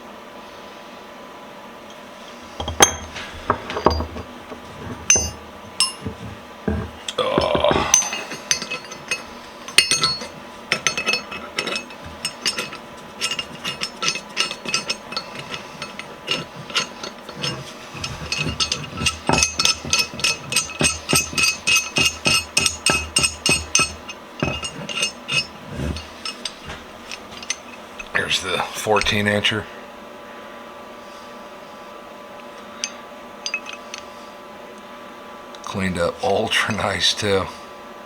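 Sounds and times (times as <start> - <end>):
pipe wrench clicking and clinking: 2.6 - 28.2, 32.8 - 34.0.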